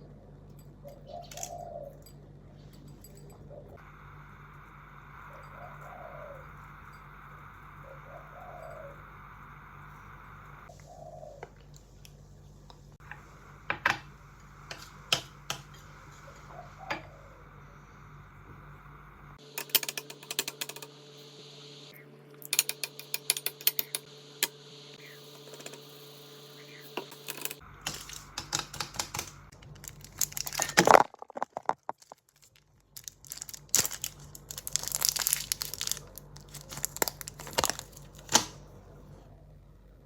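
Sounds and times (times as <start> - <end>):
packaging crinkling and tearing: 29.5 - 38.5.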